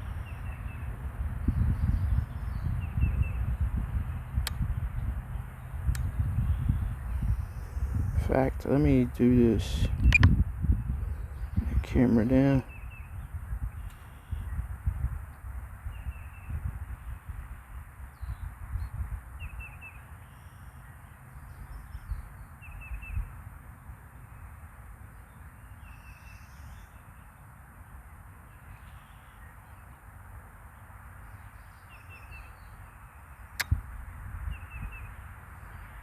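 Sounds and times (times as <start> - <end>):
wind rumble on microphone: 0.0 - 20.2, 21.4 - 27.0, 33.5 - 36.0
bird calling in quick notes: 7.2 - 10.4
sharp click: 10.0 - 10.4, 33.6 - 33.8.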